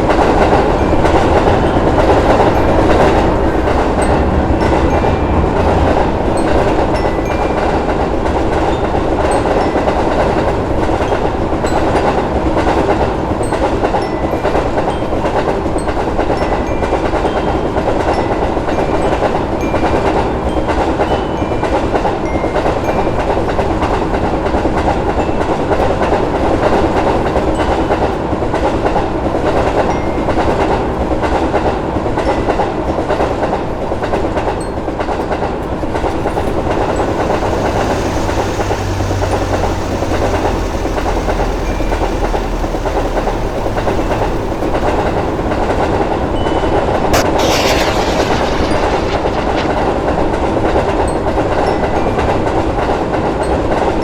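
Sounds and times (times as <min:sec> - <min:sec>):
train wheels clacking over rails: 0:35.7 - 0:46.4, 0:47.2 - 0:50.6
low hum: 0:35.8 - 0:46.5, 0:47.2 - 0:51.0.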